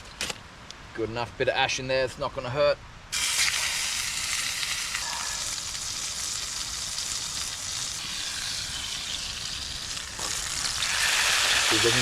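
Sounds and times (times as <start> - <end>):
steak sizzling in a pan: 3.2 - 12.0.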